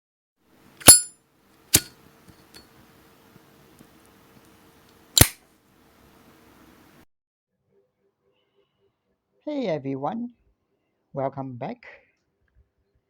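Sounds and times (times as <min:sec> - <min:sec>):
metal lighter lid clicking: 0:00.8 - 0:01.1, 0:01.8 - 0:02.6, 0:05.2 - 0:05.4.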